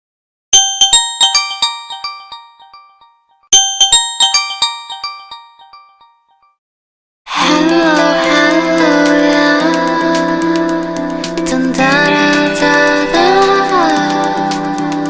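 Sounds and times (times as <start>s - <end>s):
bell-like chime ringtone: 0.6s - 6.6s
ringtone with held tones: 0.6s - 6.6s.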